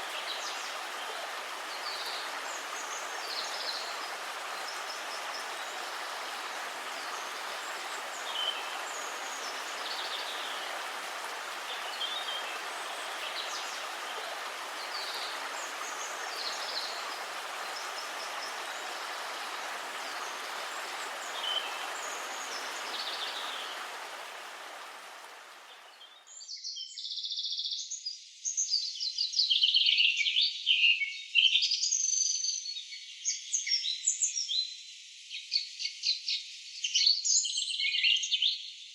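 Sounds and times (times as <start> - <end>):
rushing stream: 0.0 - 26.3
small birds chirping: 0.0 - 26.6.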